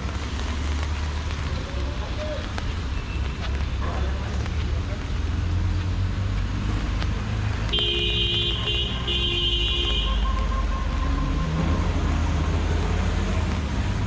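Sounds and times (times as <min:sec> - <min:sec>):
street traffic engines: 0:00.0 - 0:14.0
vehicle horn honking: 0:07.7 - 0:11.8.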